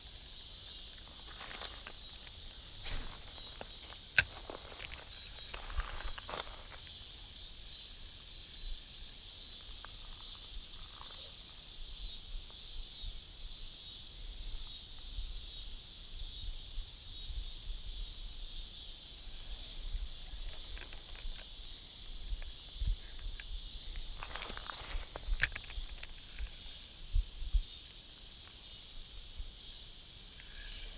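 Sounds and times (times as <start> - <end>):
insect drone pulsing: 0.0 - 30.9
wind rumble on microphone: 25.2 - 27.7.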